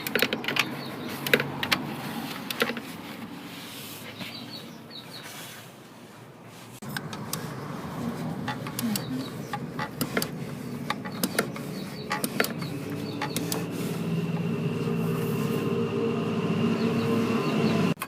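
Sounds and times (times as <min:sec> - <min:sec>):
motor humming: 0:06.8 - 0:18.0
hand tools clicking: 0:08.4 - 0:13.7.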